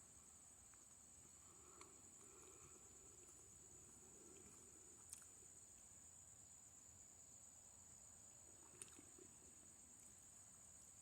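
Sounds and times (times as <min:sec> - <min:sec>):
insects trilling: 0:00.0 - 0:11.0
faint clicks: 0:04.3 - 0:05.9.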